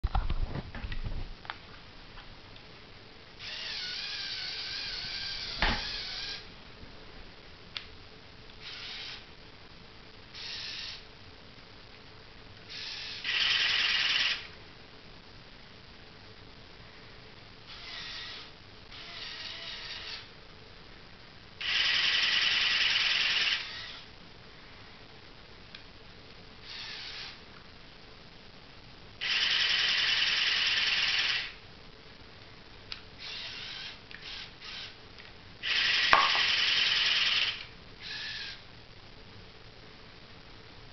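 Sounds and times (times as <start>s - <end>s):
small electric motors whirring: 3.4s - 6.5s, 8.6s - 9.2s, 10.4s - 11.0s, 12.7s - 14.5s, 17.7s - 20.3s, 21.6s - 24.1s, 26.6s - 27.4s, 29.2s - 31.6s, 33.2s - 35.0s, 35.6s - 38.6s.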